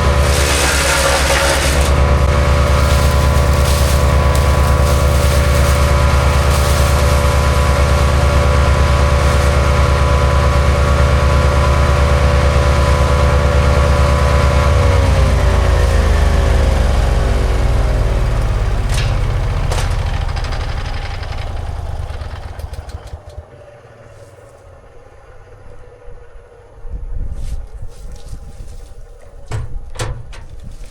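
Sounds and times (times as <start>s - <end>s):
wood chipper engine running: 0.0s - 29.5s.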